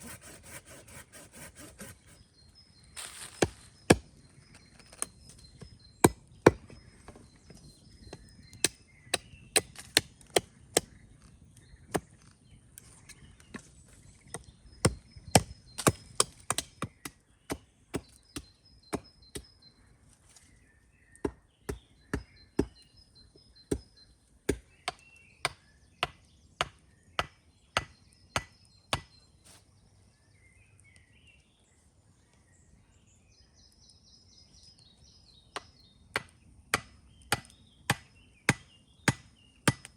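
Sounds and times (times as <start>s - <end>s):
wood being chopped: 3.0s - 4.1s, 4.8s - 7.2s, 8.1s - 11.0s, 14.3s - 19.5s, 21.2s - 22.8s, 24.5s - 29.2s, 35.6s - 39.9s.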